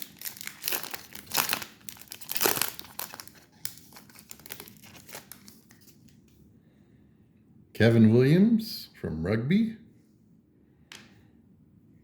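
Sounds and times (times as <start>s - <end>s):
foil wrapper tearing and crinkling: 0.0s - 5.9s.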